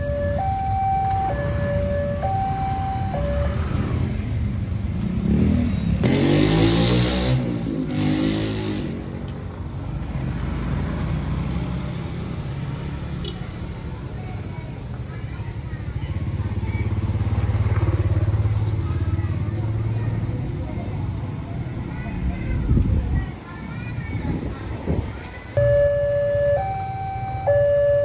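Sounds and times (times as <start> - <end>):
level-crossing alarm two-tone signal: 0.0 - 3.9, 25.6 - 28.0
road vehicles passing: 0.0 - 28.0.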